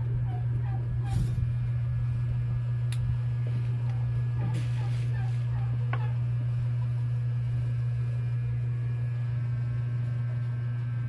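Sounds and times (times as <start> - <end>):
low electrical mains hum: 0.0 - 11.0.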